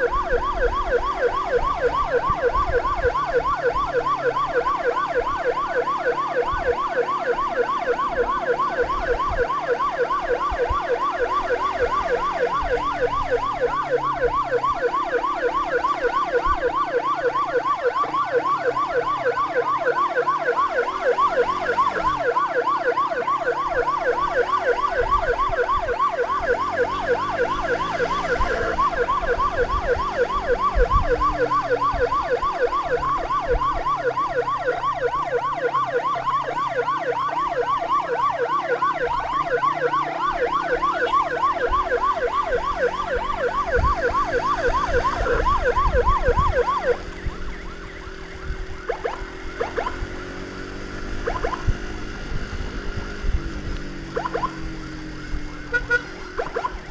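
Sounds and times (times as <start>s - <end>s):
road noise: 0.0s - 56.9s
siren yelping: 0.0s - 56.9s
motorcycle engine: 26.0s - 34.6s, 38.6s - 56.9s.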